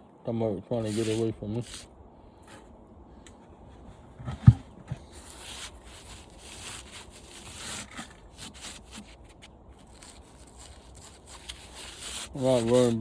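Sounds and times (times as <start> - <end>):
scraping metal fins: 0.8 - 2.7, 3.8 - 13.0.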